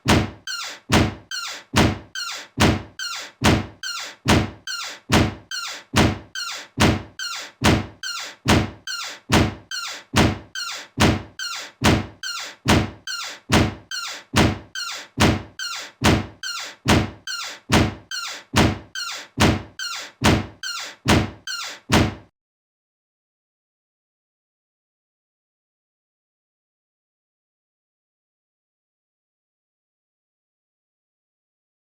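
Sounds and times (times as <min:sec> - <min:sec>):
door thunking shut: 0:00.0 - 0:22.3.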